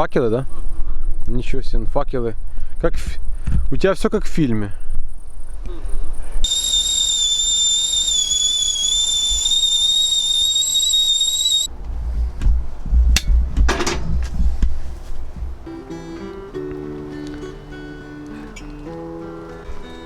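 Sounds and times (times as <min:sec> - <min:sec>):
high-pitched whistle-like tone: 0:06.4 - 0:11.7.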